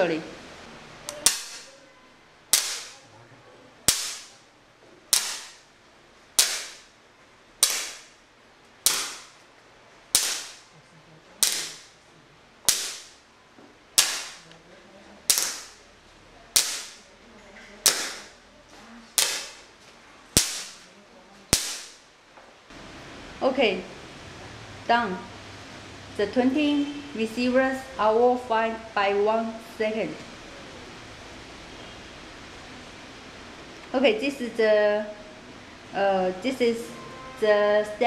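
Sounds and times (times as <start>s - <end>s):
firework igniter cracks: 1.1s - 1.8s, 2.5s - 3.0s, 3.9s - 4.4s, 7.6s - 8.2s, 8.8s - 9.4s, 10.1s - 10.7s, 11.4s - 11.9s, 15.3s - 15.8s, 20.4s - 20.9s, 21.5s - 22.0s.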